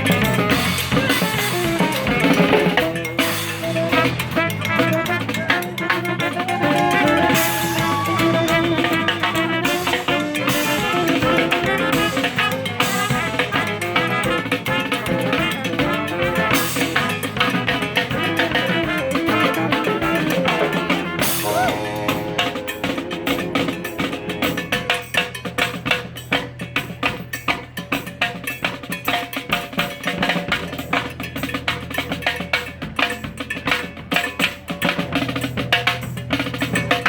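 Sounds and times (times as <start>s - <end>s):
horns playing a melody: 0.0s - 25.3s
steady drum beat: 0.0s - 37.0s.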